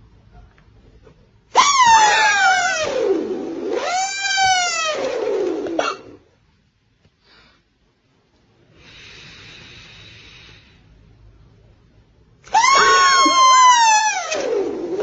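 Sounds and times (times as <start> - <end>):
breathy inhale: 7.2 - 7.7, 8.7 - 11.1.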